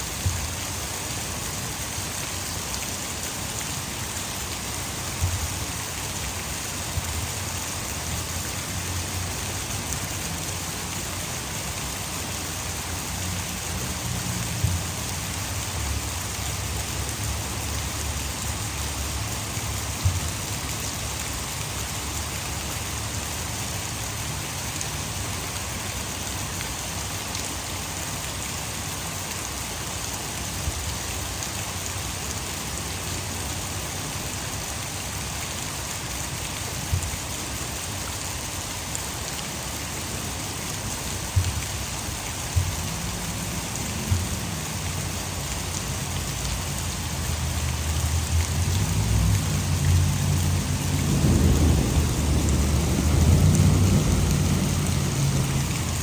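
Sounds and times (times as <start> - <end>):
heavy rain falling: 0.0 - 56.0
water rushing over a dam: 0.0 - 56.0
low rumble: 48.5 - 56.0.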